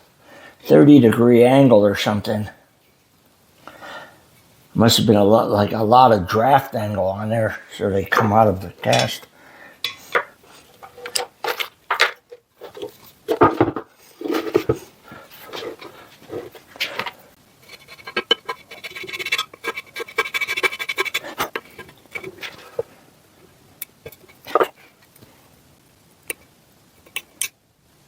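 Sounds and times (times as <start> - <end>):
hand tools scraping metal: 8.8 - 12.9, 14.1 - 22.9.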